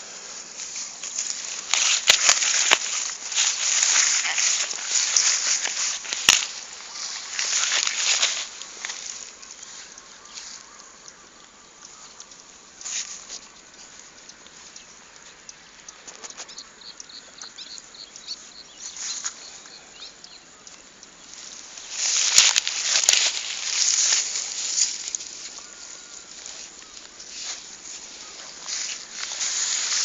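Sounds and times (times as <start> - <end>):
rustling and scuffing: 0.0 - 10.8, 12.8 - 14.8, 21.3 - 30.0.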